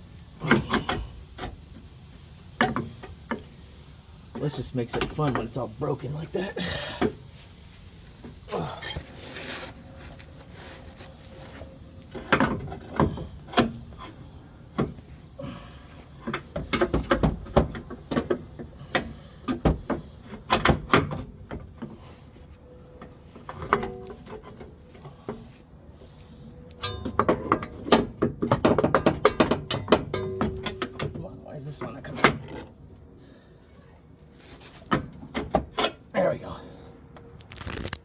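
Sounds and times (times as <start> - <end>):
hand tools clanking on metal: 4.4 - 5.6, 26.8 - 31.2.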